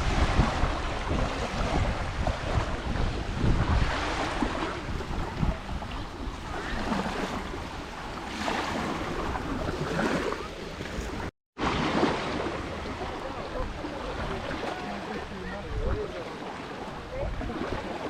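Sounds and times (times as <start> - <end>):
wind buffeting microphone: 0.0 - 11.3, 12.4 - 18.0.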